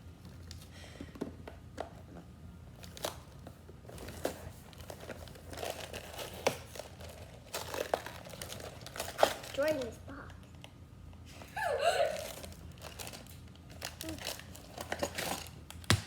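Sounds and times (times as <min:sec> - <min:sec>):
cardboard packaging crinkling and tearing: 0:02.8 - 0:09.9, 0:12.0 - 0:16.0.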